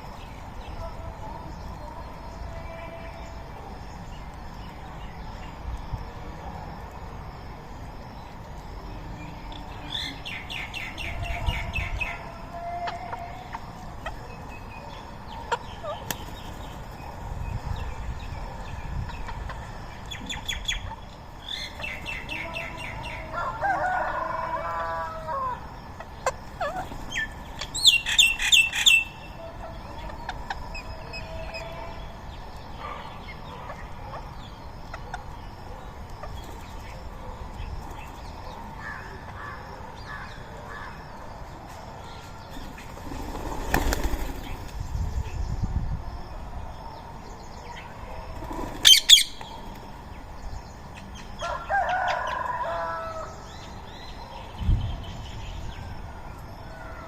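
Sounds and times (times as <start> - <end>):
parakeets screeching: 26.6 - 29.2, 48.5 - 49.4.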